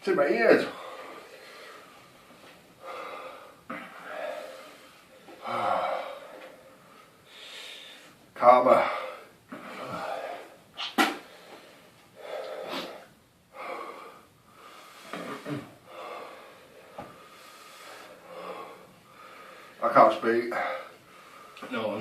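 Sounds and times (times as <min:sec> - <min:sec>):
man breathing hard: 0:00.7 - 0:08.2, 0:08.8 - 0:10.6, 0:11.2 - 0:19.8, 0:20.5 - 0:21.6
man sniffing: 0:12.2 - 0:14.0.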